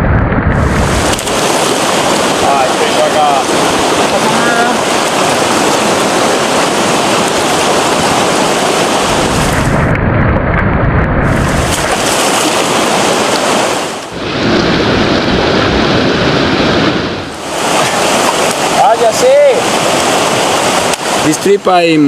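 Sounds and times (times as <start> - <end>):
fast-flowing river water: 0.8 - 9.6, 11.6 - 14.8, 17.3 - 22.0.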